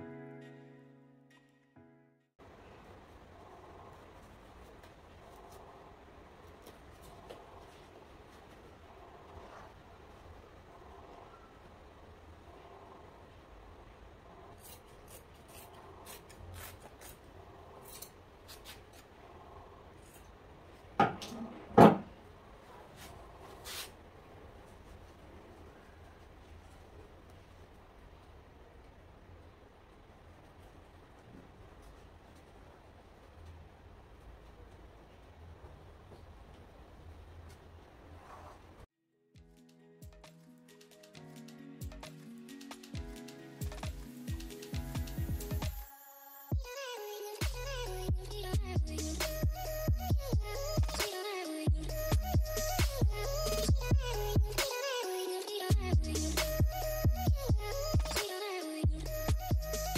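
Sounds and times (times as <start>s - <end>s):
deep kick drum beats: 43.0s - 45.8s, 47.4s - 51.0s, 51.7s - 54.6s, 55.7s - 58.2s.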